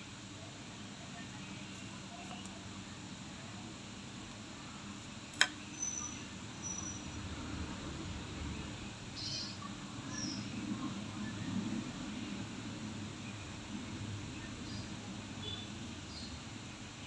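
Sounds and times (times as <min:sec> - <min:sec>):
low background hum: 0:00.0 - 0:17.0
nail nipper snapping shut: 0:05.4 - 0:05.6.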